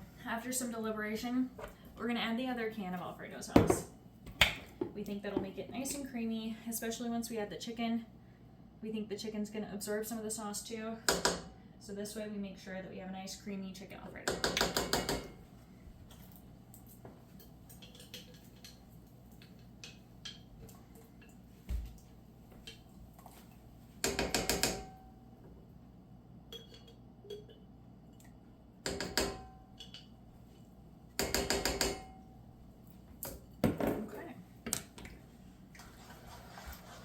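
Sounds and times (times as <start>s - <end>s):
utensil scraping cookware: 35.8s - 37.0s.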